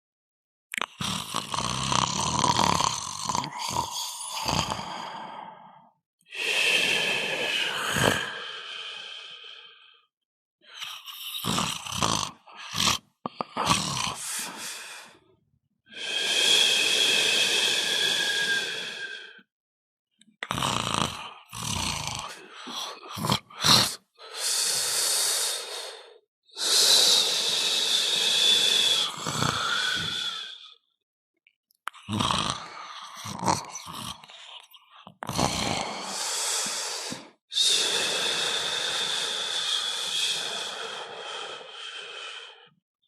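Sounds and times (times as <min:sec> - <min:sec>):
snoring with whistling wheeze: 0:00.8 - 0:15.3, 0:15.9 - 0:19.5, 0:20.4 - 0:30.9, 0:32.0 - 0:42.8.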